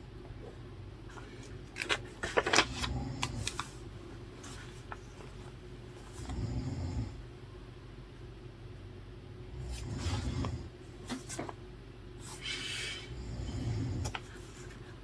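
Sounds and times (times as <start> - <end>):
clicks and paper rustling: 1.1 - 3.8, 11.1 - 11.6
person snoring: 6.2 - 7.2, 13.0 - 14.1.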